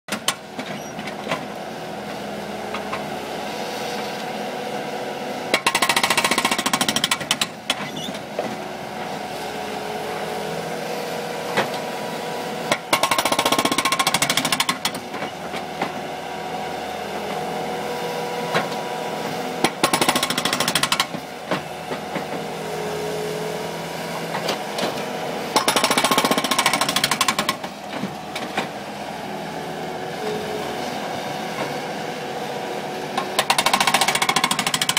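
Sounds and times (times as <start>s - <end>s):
skid-steer engine running: 0.1s - 34.9s
hydraulic breaker hammering pavement: 5.5s - 8.6s, 12.7s - 16.0s, 19.6s - 22.4s, 24.3s - 28.7s, 33.1s - 34.9s.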